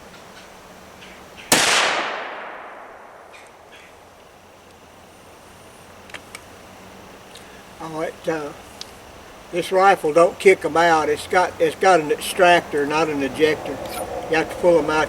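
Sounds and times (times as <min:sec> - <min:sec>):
rifle shot: 0:01.5 - 0:03.3.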